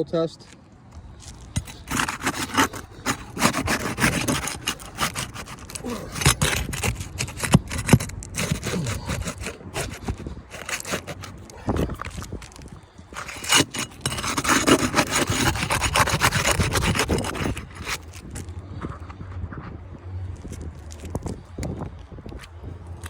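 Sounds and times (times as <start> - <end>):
roof shingles being scraped: 1.4 - 18.4.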